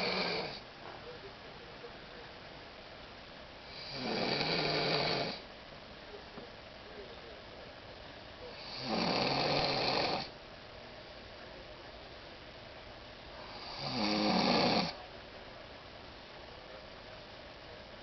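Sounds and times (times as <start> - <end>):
woman snoring loudly: 0.0 - 0.6, 3.7 - 5.4, 8.6 - 10.3, 13.5 - 15.0.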